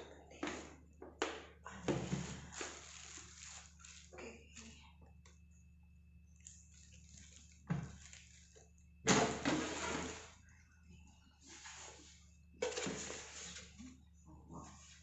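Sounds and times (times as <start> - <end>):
rustling and clatter of packaging: 2.0 - 4.8, 6.3 - 10.4.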